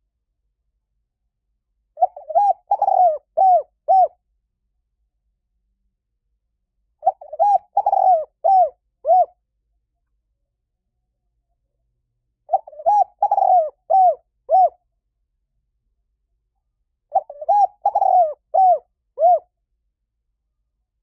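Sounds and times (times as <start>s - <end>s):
dove cooing: 2.0s - 4.2s, 7.0s - 9.4s, 12.5s - 14.8s, 17.1s - 19.5s.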